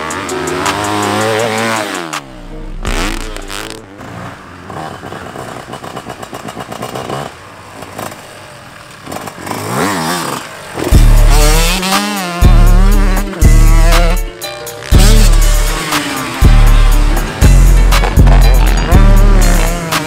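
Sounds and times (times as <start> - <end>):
heavy bass-driven music: 0.0 - 3.9, 10.9 - 20.0
dirt bike engines revving: 0.0 - 20.0.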